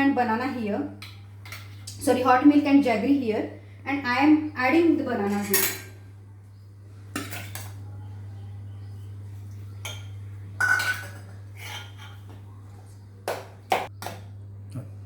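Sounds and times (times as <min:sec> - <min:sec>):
spoon clinking against bowl: 0:09.8 - 0:12.2.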